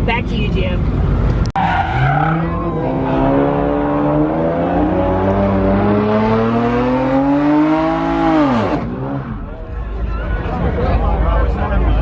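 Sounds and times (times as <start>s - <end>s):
car engine at high revs: 1.0s - 9.5s.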